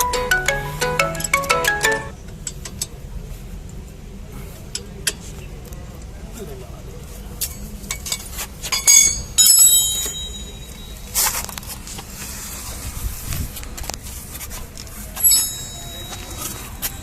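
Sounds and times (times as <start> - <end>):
metal tools clinking: 7.6 - 11.0, 15.2 - 16.9.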